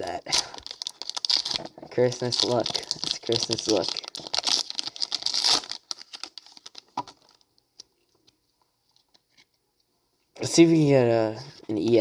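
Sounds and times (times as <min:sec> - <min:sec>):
foil wrapper tearing and crinkling: 0:00.2 - 0:07.4.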